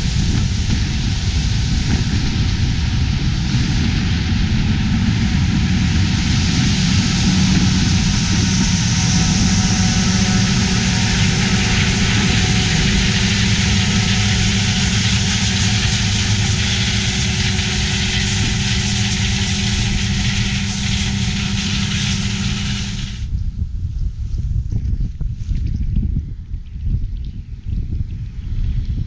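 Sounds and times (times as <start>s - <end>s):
diesel engine hum: 0.0s - 23.3s
loud rushing noise: 0.0s - 23.3s
low wind-like rumble: 0.0s - 29.0s.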